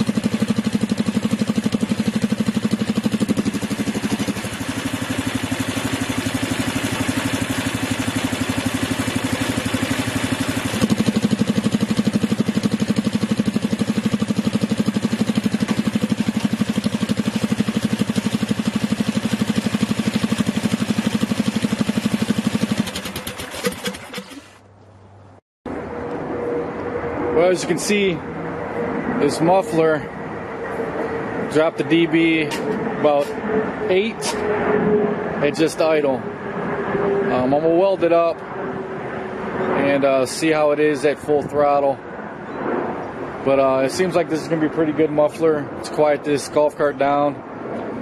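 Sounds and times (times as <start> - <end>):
engine idling: 0.0 - 24.7.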